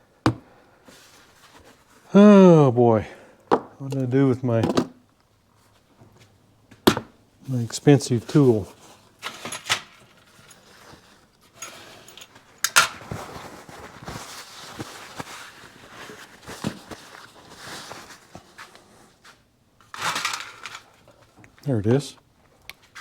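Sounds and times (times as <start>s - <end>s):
metal tools clinking: 9.2s - 12.9s.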